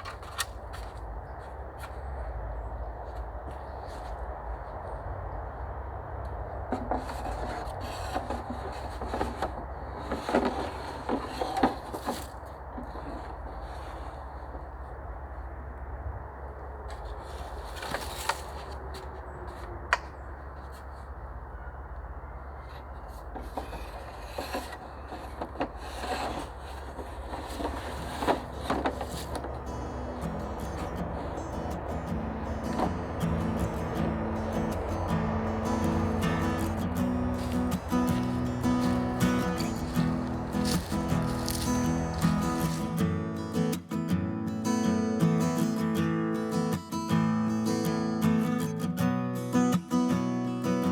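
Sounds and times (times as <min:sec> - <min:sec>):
knocks and scrapes of wood: 0:00.0 - 0:02.0, 0:06.6 - 0:14.8, 0:16.9 - 0:21.1, 0:22.6 - 0:43.0
steady low rumble: 0:28.4 - 0:43.0.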